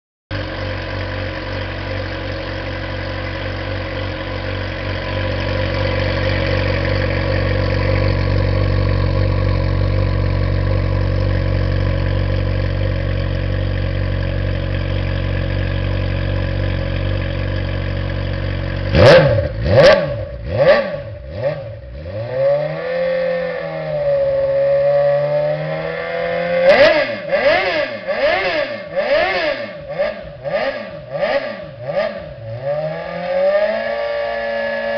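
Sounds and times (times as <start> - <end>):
motorcycle engine idling: 0.3 - 22.1
motorcycle throttle blips and revs: 0.3 - 34.9.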